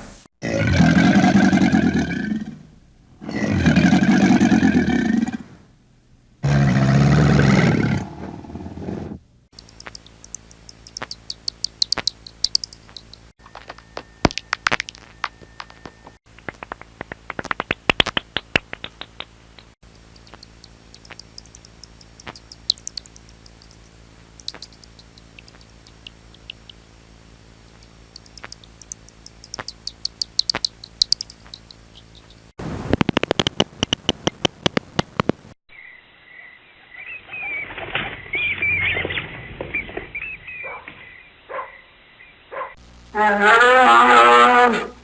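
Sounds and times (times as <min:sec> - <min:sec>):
sharp clicks: 0:09.6 - 0:26.8, 0:27.7 - 0:35.4
high-pitched animal squeaks and chirps: 0:09.7 - 0:13.3, 0:20.2 - 0:23.8, 0:24.4 - 0:26.8, 0:28.1 - 0:32.5.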